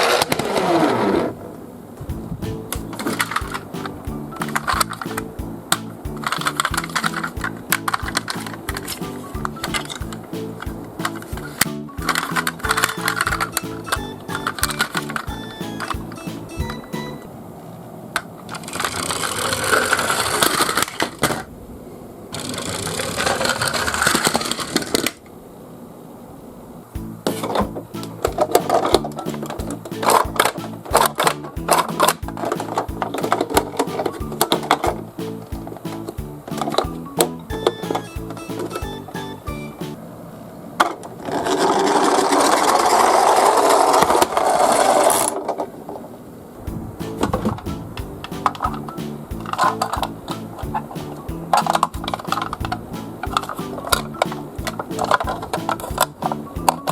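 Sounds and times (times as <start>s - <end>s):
toy truck wheels rattling: 3.0s - 3.7s, 40.8s - 45.6s
toy trucks rolling rattle: 18.5s - 21.5s, 22.3s - 25.2s, 40.8s - 46.0s.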